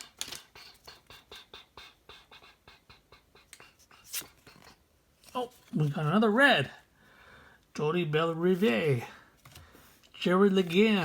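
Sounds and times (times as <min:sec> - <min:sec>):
trading cards clicking and rustling: 0:00.0 - 0:01.0, 0:09.4 - 0:11.0.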